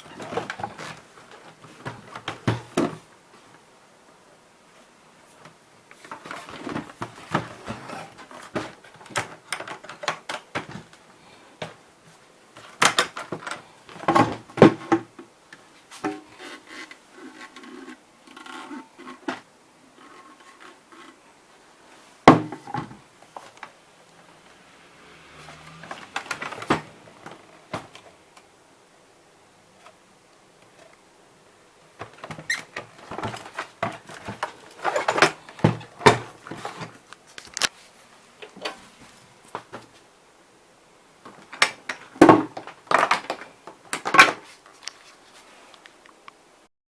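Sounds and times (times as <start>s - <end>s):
hard objects clicking and rattling: 6.0s - 11.0s.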